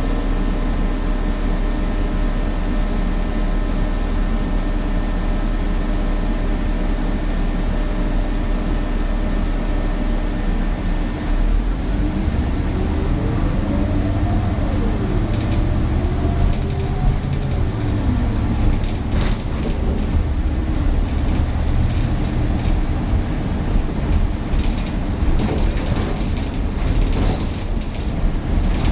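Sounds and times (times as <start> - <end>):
bus engine and road rumble: 0.0 - 28.9
engine revving whine: 10.9 - 27.6
creaky bus body rattling: 11.0 - 28.9.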